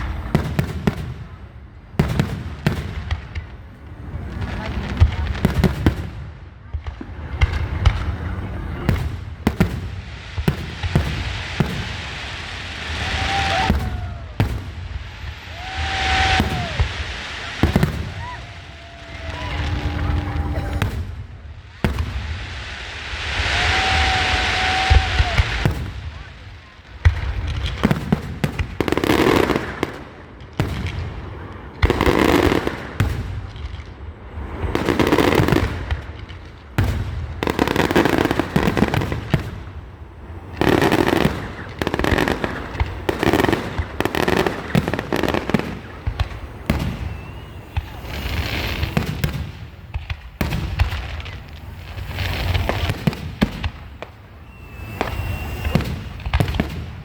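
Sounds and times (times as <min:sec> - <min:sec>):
firework shells bursting: 0:10.6 - 0:25.9, 0:40.5 - 0:57.0.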